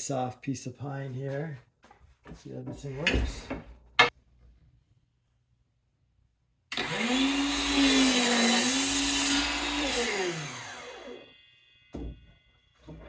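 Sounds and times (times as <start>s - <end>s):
miter saw whining and cutting wood: 6.7s - 12.1s.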